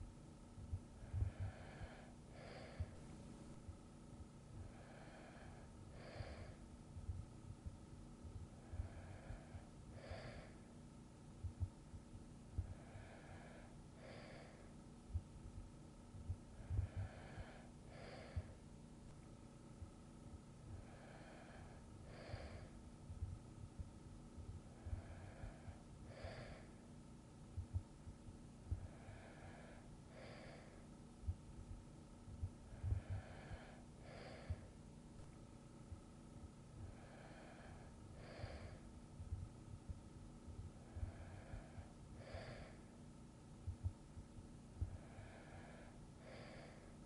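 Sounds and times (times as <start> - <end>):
sleeping person breathing: 0.8 - 3.8, 4.5 - 7.2, 8.3 - 10.8, 12.5 - 15.4, 16.3 - 19.3, 20.3 - 27.8, 28.6 - 31.5, 32.3 - 35.4, 36.7 - 39.9, 40.5 - 43.0, 44.8 - 47.0
faint low thumps: 6.9 - 8.9, 22.4 - 25.7, 31.2 - 33.7, 39.2 - 41.8, 43.6 - 45.0
faint low thuds: 7.0 - 8.5, 22.4 - 25.6, 31.2 - 33.7, 39.2 - 41.7, 43.6 - 45.0.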